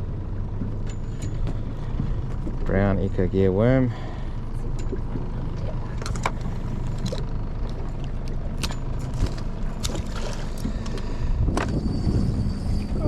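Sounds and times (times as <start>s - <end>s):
boat engine low rumble: 0.0s - 13.0s.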